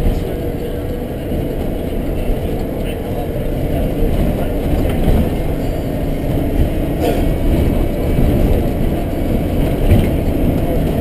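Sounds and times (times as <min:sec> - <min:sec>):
car driving on bumpy road: 0:00.0 - 0:11.0.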